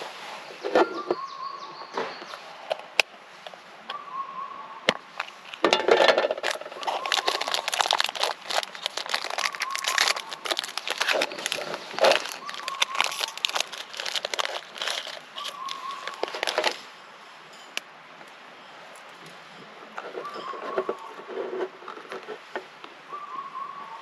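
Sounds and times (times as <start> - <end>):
crinkling and rustling: 4.9 - 16.8, 20.0 - 22.7
dense irregular clicks: 5.4 - 16.8.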